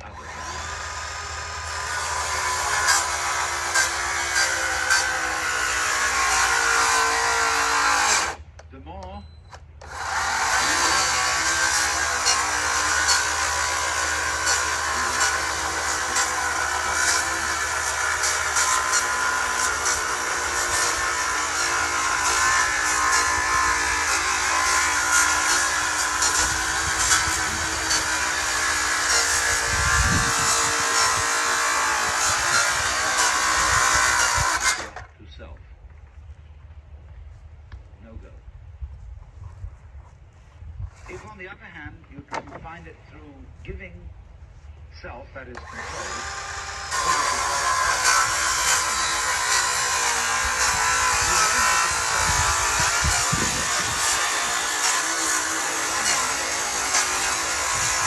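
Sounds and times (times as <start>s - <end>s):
power tool motor hum: 0.2s - 8.4s, 9.8s - 35.1s, 45.6s - 58.0s.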